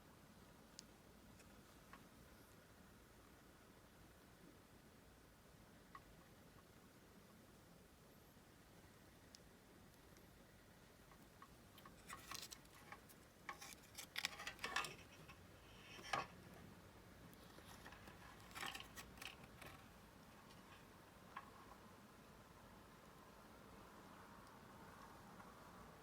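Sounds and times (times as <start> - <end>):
small hard objects clattering: 11.9 - 15.3.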